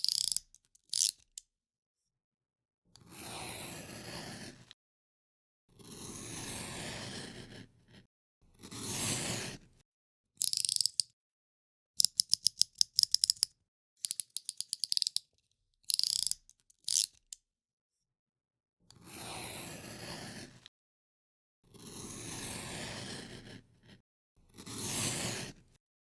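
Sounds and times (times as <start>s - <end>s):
utility knife blade ratcheting clicks: 0.0s - 1.4s, 10.4s - 11.1s, 12.0s - 15.2s, 15.9s - 17.4s.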